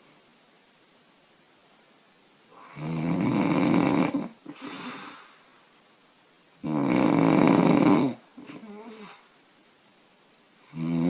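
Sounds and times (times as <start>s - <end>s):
woman snoring: 2.6s - 5.2s, 6.6s - 9.3s, 10.7s - 11.0s.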